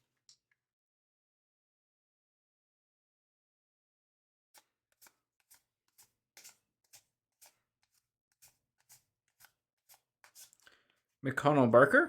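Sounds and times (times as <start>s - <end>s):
cards sliding soft swishes: 4.6s - 11.2s.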